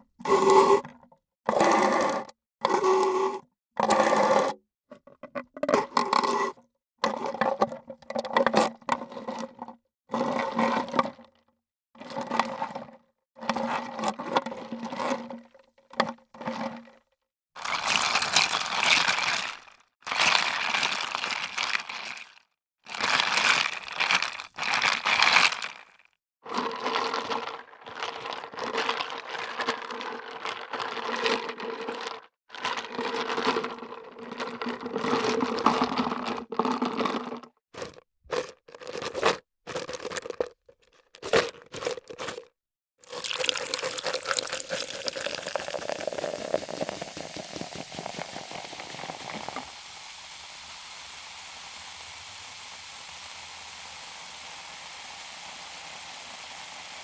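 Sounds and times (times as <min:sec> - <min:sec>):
liquid pouring into container: 0:17.6 - 0:32.1, 0:43.0 - 0:57.0
fizzing hiss: 0:43.1 - 0:57.0.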